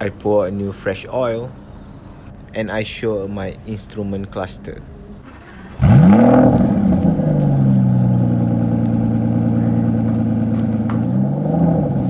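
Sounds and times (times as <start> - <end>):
car engine running at raised revs: 5.2 - 12.0.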